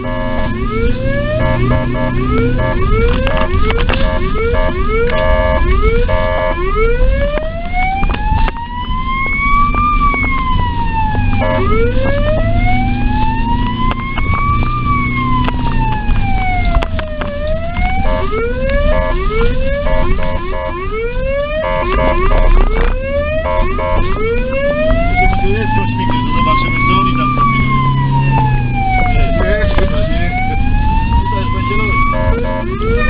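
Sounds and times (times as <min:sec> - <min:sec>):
horn blasts: 0:00.0 - 0:06.8, 0:11.2 - 0:12.9, 0:17.8 - 0:27.8, 0:31.3 - 0:33.0
ambulance siren wailing: 0:00.0 - 0:33.0.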